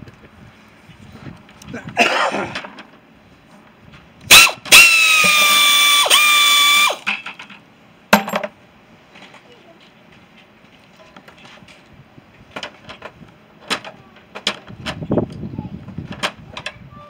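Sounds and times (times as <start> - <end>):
power drill motor whine: 4.3 - 7.1.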